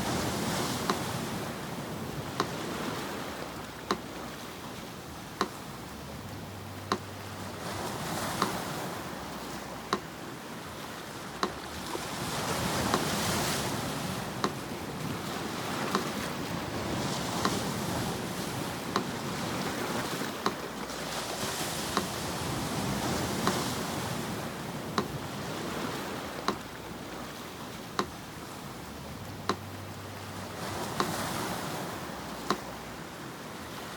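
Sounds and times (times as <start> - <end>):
sea surf washing in: 0.0 - 33.9
metronome ticking: 2.2 - 2.6, 3.5 - 4.3, 5.0 - 10.2, 11.4 - 11.9, 12.6 - 16.3, 16.9 - 19.6, 24.9 - 25.2, 26.4 - 27.1, 27.9 - 28.2, 29.2 - 31.4, 32.2 - 33.1.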